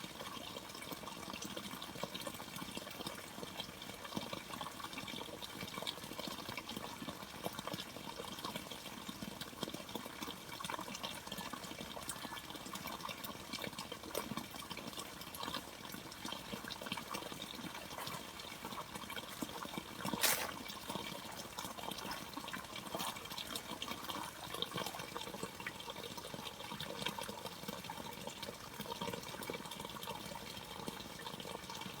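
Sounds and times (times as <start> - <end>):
running water splashing: 14.0 - 26.6.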